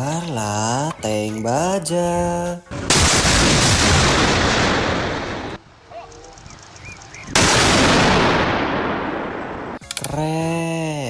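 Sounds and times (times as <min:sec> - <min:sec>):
cannon blasts: 0:02.7 - 0:05.6, 0:07.4 - 0:09.8.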